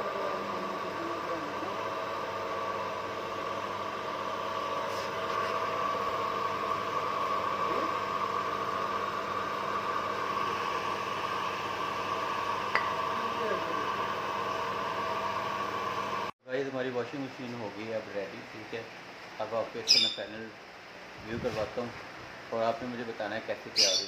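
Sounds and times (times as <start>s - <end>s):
washing machine spinning: 0.0s - 16.3s.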